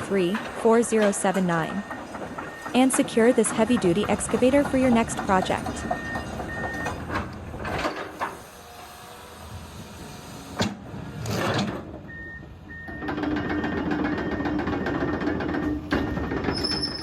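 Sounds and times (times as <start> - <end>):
clanks and knocks: 0.0 - 8.4, 12.9 - 17.0
excavator running: 0.0 - 17.0.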